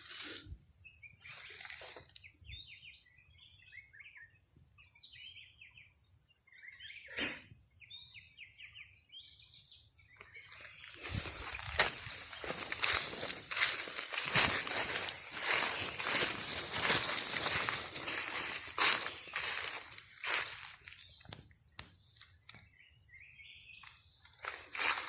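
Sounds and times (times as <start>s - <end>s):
insect drone: 0.0s - 25.0s
footsteps through vegetation: 10.5s - 21.5s, 24.4s - 25.0s.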